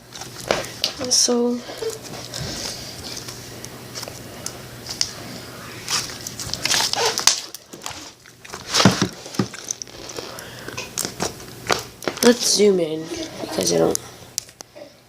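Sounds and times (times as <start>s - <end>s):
slime squished by hand: 4.9s - 11.8s.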